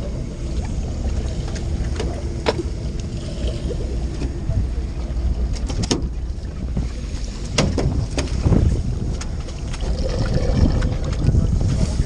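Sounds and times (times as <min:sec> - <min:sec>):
boat engine rumble: 0:00.0 - 0:12.0
wind buffeting microphone: 0:00.0 - 0:12.0.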